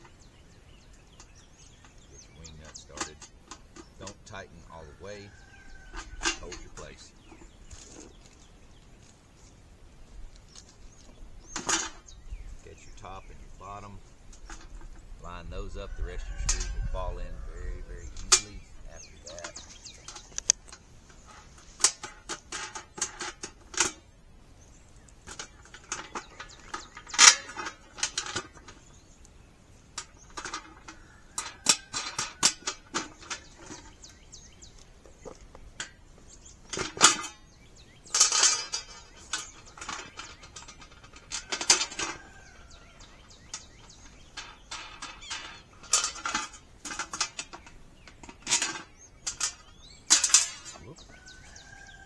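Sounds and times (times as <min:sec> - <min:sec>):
metal panels and screws clinking: 0:01.1 - 0:08.2, 0:11.4 - 0:12.0, 0:15.9 - 0:24.2, 0:25.0 - 0:29.0, 0:29.8 - 0:37.5, 0:38.1 - 0:52.0.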